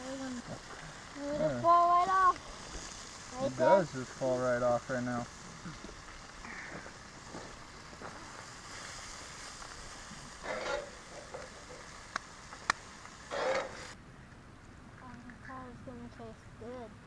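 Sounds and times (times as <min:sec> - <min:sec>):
fish sizzling in a pan: 0:00.0 - 0:14.0
short scrapes: 0:13.3 - 0:14.0.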